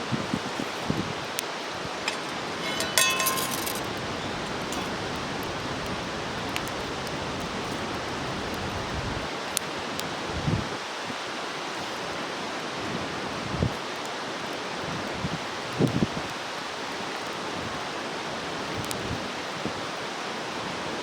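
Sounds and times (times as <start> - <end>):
metal clink: 2.0 - 5.0.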